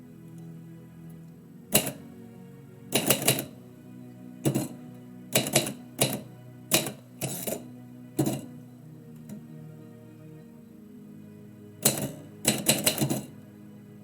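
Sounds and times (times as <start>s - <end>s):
soft background music: 0.0s - 14.0s
typewriter keys struck: 1.8s - 2.0s, 3.0s - 3.5s, 5.4s - 7.6s, 11.8s - 13.3s.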